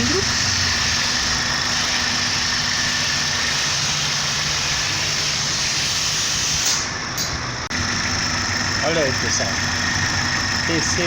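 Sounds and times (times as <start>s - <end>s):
car engine idling: 0.0s - 3.6s, 7.5s - 11.0s.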